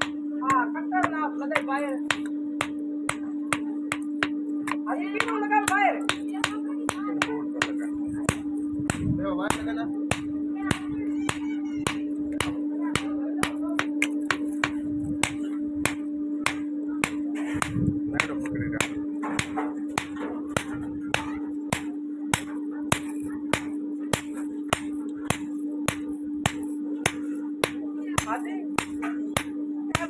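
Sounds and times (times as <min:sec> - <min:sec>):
hammer striking axe head: 0:00.0 - 0:30.0
steady hum: 0:00.0 - 0:30.0.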